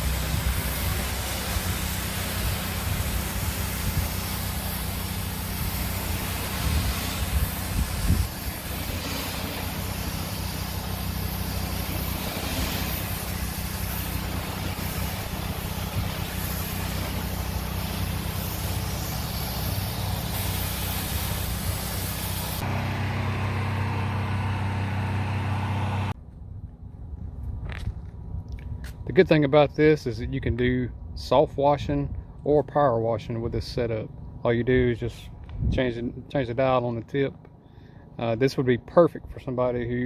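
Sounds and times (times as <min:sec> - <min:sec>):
high-pressure water spray hiss: 0:00.0 - 0:26.2
pressure washer engine running: 0:00.0 - 0:26.2.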